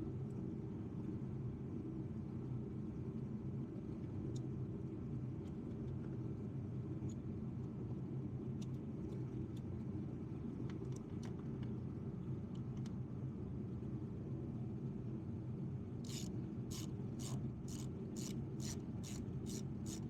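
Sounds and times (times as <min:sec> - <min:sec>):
low background hum: 0:00.0 - 0:20.0
small tools clicking and tapping: 0:16.1 - 0:20.0.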